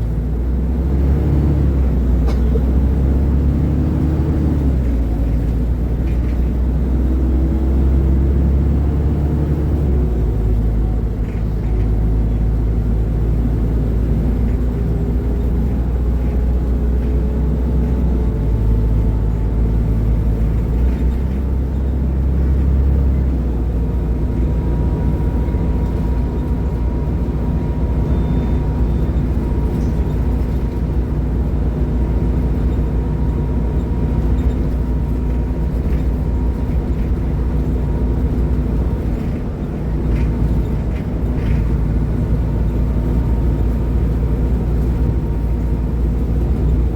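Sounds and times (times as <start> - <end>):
bus diesel engine rumbling: 0.0 - 46.9.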